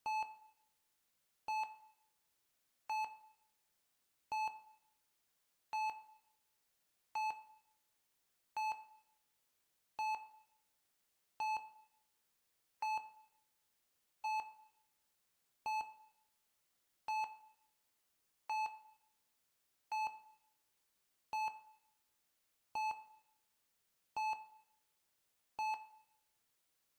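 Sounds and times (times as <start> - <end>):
heart rate monitor beeping: 25.6 - 25.8.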